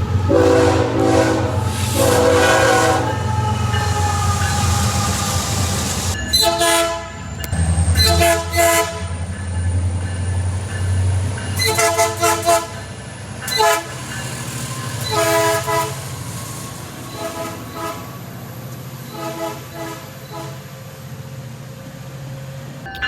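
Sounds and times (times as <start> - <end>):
multi-chime train horn blasts: 0.1 - 9.2, 11.6 - 12.9, 13.5 - 16.2, 17.0 - 18.3, 19.0 - 20.7.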